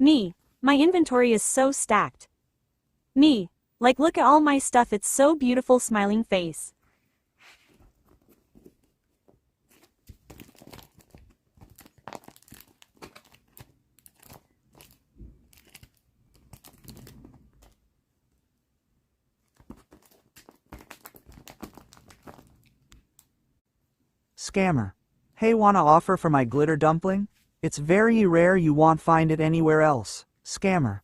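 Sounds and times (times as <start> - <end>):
paper crinkling and rustling: 9.6 - 17.8, 19.4 - 22.8.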